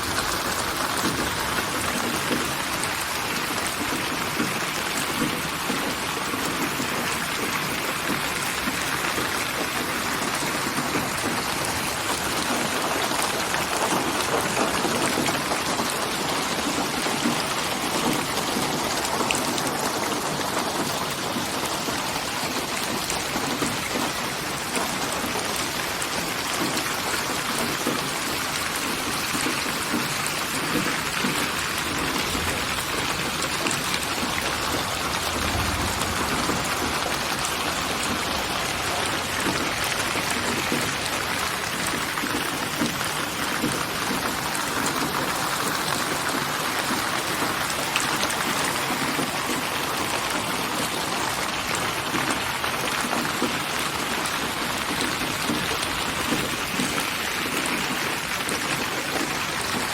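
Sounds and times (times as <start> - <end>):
steady rain falling: 0.0 - 59.9
low rumble: 34.8 - 37.8.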